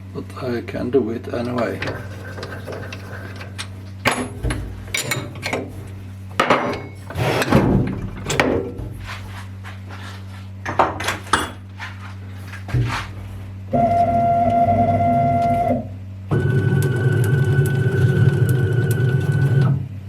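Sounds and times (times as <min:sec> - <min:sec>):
metal plate clanking in lathe chuck: 0:01.4 - 0:09.0
low hum: 0:01.5 - 0:09.8, 0:11.5 - 0:19.8.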